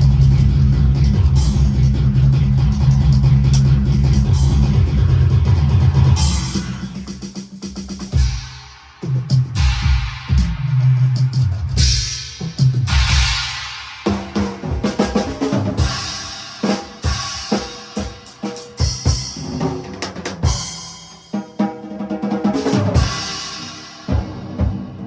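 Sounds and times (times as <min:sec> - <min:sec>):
snare and tom fills: 0:06.5 - 0:25.0.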